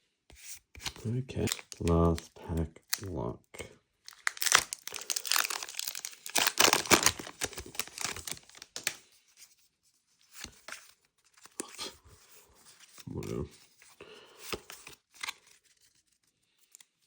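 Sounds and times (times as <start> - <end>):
foil wrapper tearing and crinkling: 4.1 - 9.0.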